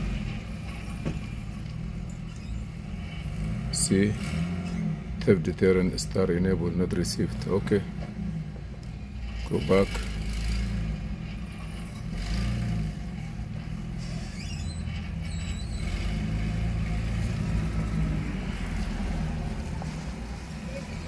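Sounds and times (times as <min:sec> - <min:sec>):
low rumble of vehicle: 0:00.0 - 0:21.0
faint rising squeak: 0:02.0 - 0:03.0, 0:14.0 - 0:16.2.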